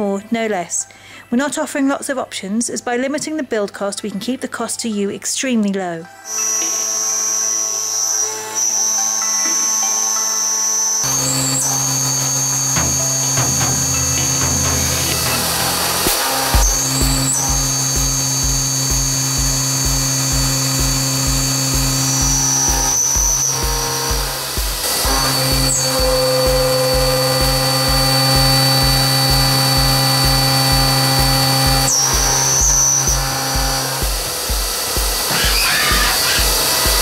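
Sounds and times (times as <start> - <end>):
machine cutter whine: 6.3 - 37.0
background music with beat: 9.1 - 37.0.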